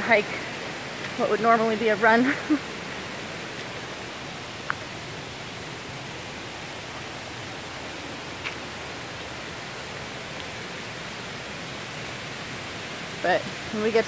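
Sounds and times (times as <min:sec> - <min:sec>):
waterfall rushing: 0:00.0 - 0:14.0.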